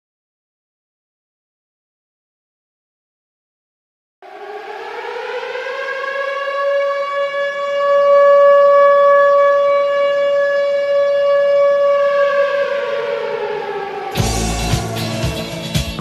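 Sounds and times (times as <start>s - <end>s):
air-raid style goal siren: 4.2s - 15.8s.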